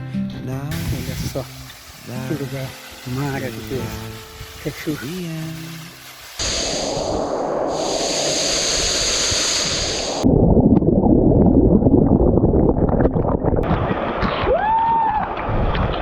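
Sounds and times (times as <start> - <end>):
waterfall rushing: 0.7 - 10.2
wind buffeting microphone: 6.4 - 16.0.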